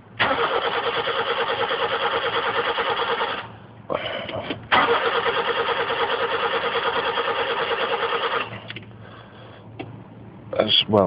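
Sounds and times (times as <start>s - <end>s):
low steady hum: 0.0s - 11.0s
car starter motor cranking: 0.2s - 3.5s, 4.7s - 8.9s.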